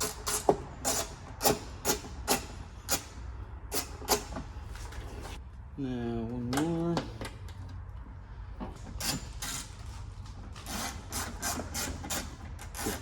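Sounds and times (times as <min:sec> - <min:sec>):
hand ratchet rasping: 0:10.6 - 0:13.0.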